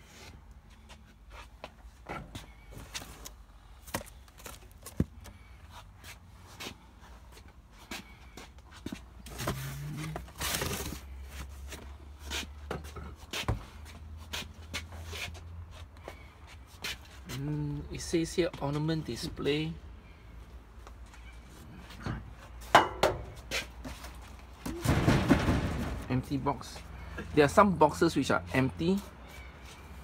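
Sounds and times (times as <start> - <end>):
knocks and scrapes of boxes: 23.1 - 26.3.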